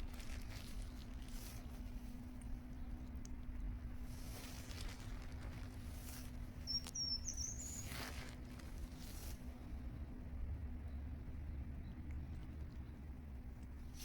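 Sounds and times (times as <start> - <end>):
steady low hum: 0.0 - 14.0
small bird chirping: 5.9 - 9.4.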